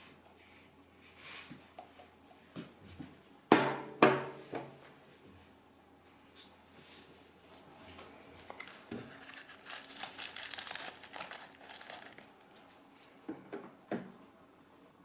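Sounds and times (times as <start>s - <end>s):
crinkling and rustling: 7.5s - 13.3s.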